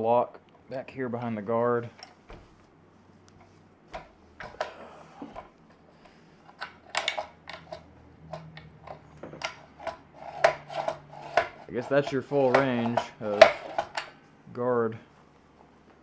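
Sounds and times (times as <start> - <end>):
faint steady hum: 0.0 - 16.0
saw handling clicks and knocks: 3.4 - 5.5, 6.5 - 14.2.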